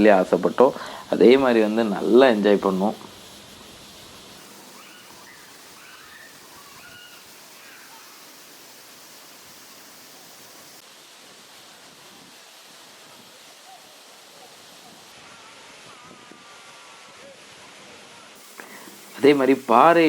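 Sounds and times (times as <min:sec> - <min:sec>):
waterfall rushing: 0:04.3 - 0:20.0
faint voices: 0:14.9 - 0:20.0.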